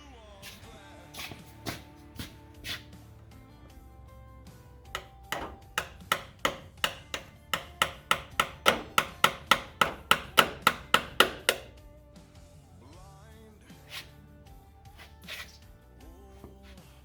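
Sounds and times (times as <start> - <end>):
hammer striking metal: 4.9 - 11.8.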